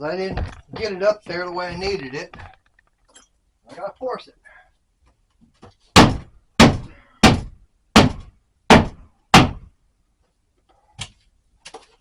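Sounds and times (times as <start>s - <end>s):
hammer strikes: 6.0s - 9.7s.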